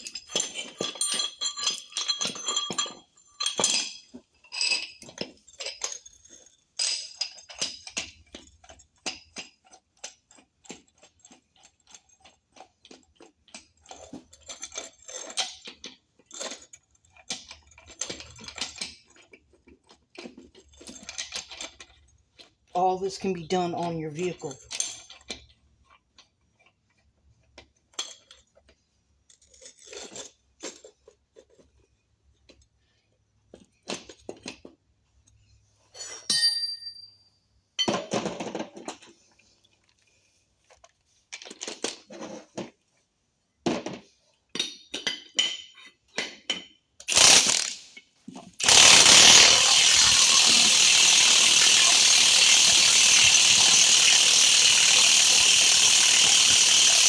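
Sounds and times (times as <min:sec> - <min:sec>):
metal tools clinking: 0:00.0 - 0:09.8, 0:35.9 - 0:37.2, 0:44.6 - 0:48.0, 0:48.6 - 0:57.0
power tool running: 0:47.1 - 0:47.8, 0:48.6 - 0:57.0.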